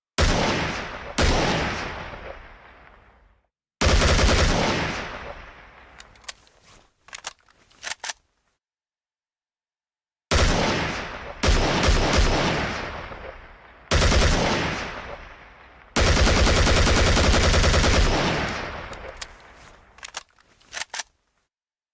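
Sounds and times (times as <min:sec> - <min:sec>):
rifle gunshots with echo: 0:00.2 - 0:03.2, 0:03.8 - 0:06.2, 0:10.3 - 0:20.0
sharp clicks: 0:05.9 - 0:06.5, 0:07.1 - 0:08.2, 0:18.4 - 0:21.1.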